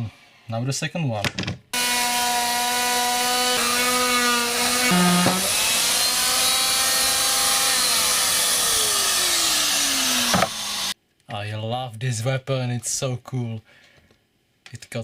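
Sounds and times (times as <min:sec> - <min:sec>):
power saw cutting wood: 0:01.8 - 0:11.0.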